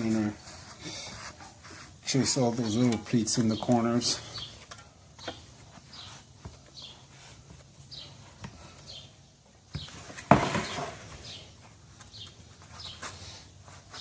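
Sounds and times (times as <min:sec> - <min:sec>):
small bird chirping: 0:03.4 - 0:07.2, 0:07.9 - 0:13.4.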